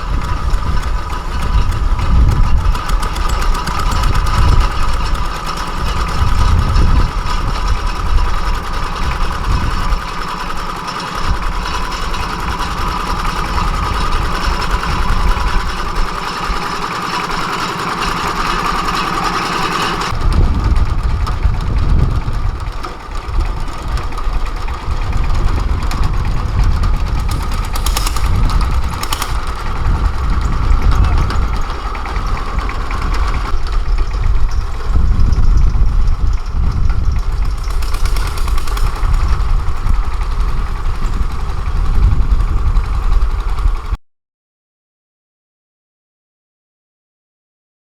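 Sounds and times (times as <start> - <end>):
engine rumbling: 0.0 - 44.0.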